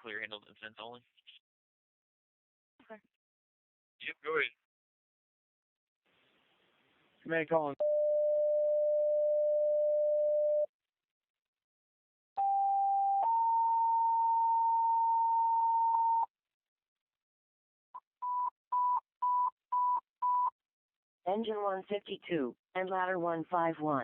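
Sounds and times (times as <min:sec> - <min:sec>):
two-tone radio page: 0:21.3 - 0:24.0.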